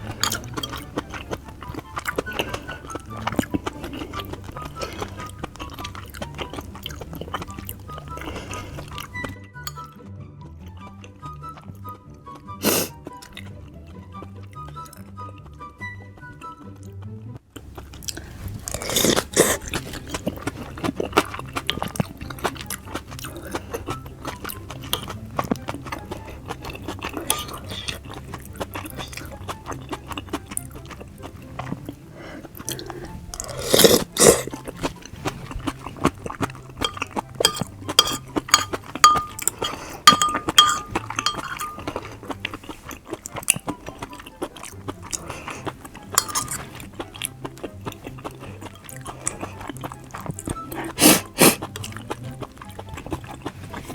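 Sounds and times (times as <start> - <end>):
utensils clinking on dishes: 0.0 - 9.9, 26.5 - 29.5, 33.4 - 43.6, 46.1 - 47.1
wet chewing and mouth clicks: 0.0 - 9.9, 10.9 - 53.9.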